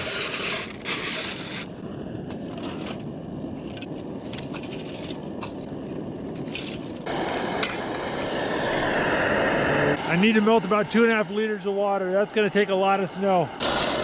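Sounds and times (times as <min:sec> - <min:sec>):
snow being scraped: 0:00.0 - 0:01.8, 0:02.4 - 0:03.0
camp stove burning: 0:00.0 - 0:14.0.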